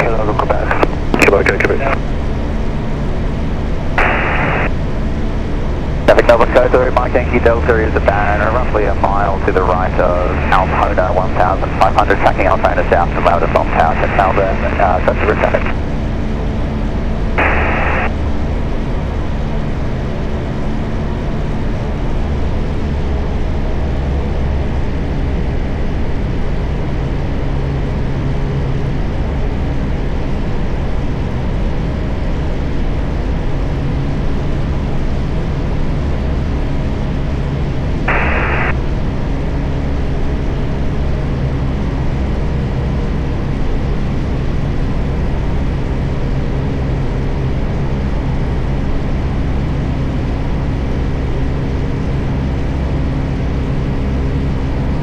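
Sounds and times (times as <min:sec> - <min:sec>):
radio squelch hiss: 0:00.0 - 0:02.0, 0:04.0 - 0:04.7, 0:06.1 - 0:15.8, 0:17.4 - 0:18.1, 0:38.1 - 0:38.8
light aircraft engine drone: 0:00.0 - 0:55.0.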